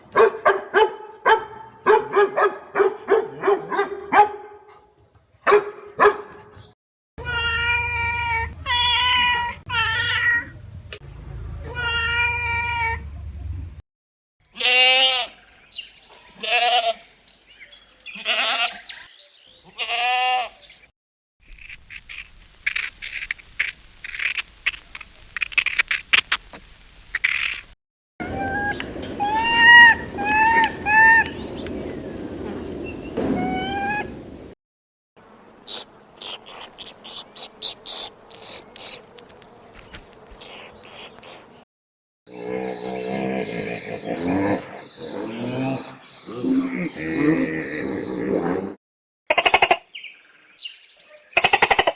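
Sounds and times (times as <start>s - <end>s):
goat bleating: 14.6s - 15.4s, 16.3s - 17.0s, 18.1s - 18.9s, 19.6s - 20.6s
mongoose calls: 28.2s - 31.7s, 35.7s - 39.0s, 40.3s - 41.6s.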